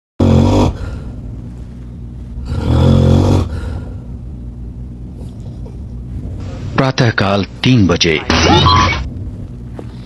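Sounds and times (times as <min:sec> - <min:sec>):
loud snoring: 0:00.2 - 0:01.1, 0:02.4 - 0:04.0.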